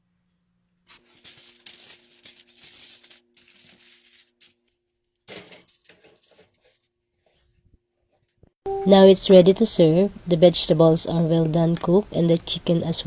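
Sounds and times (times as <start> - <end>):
foil crinkling and rustling: 0.9 - 7.0
faint steady hum: 8.7 - 13.0.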